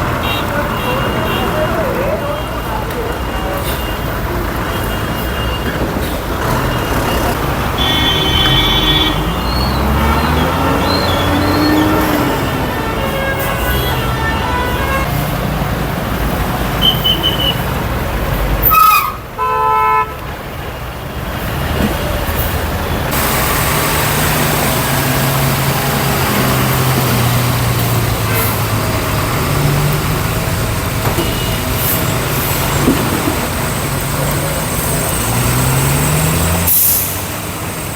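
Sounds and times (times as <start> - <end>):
vehicle engines running: 0.0 - 19.4, 20.2 - 37.9
car horn honking: 0.1 - 2.8, 6.7 - 15.1, 16.8 - 17.7, 18.6 - 20.3, 31.1 - 32.0
engine revving: 6.3 - 13.0, 21.5 - 37.9.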